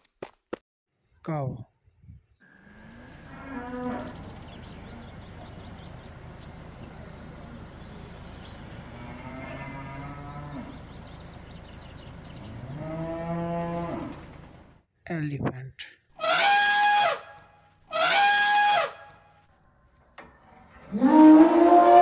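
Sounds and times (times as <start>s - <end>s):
cow mooing: 2.6s - 5.2s, 8.8s - 10.9s, 12.4s - 14.2s, 20.8s - 22.0s.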